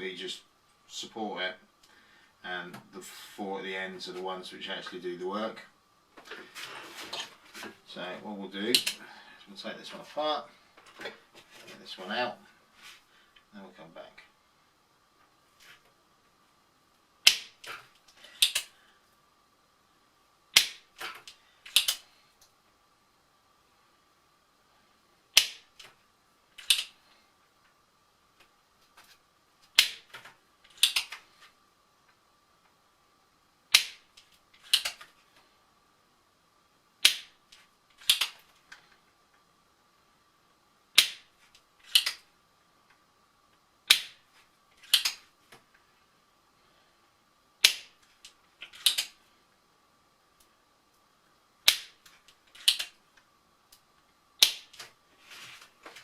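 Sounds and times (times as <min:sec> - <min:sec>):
faint high whine: 0:00.0 - 0:56.0
solder sucker snapping: 0:25.4 - 0:25.9.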